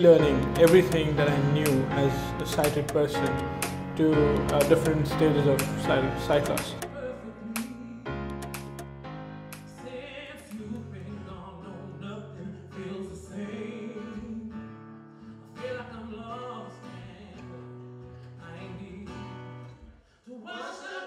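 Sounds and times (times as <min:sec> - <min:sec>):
person singing: 0:00.0 - 0:08.8, 0:09.6 - 0:14.7
held instrumental notes: 0:00.0 - 0:10.0.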